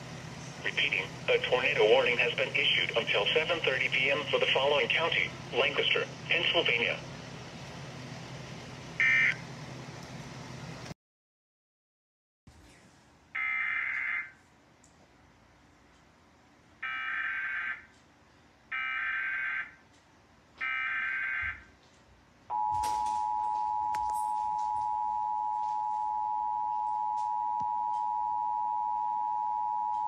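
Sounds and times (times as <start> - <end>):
steady dual-tone alert signal: 9.0 - 9.4, 22.5 - 30.0.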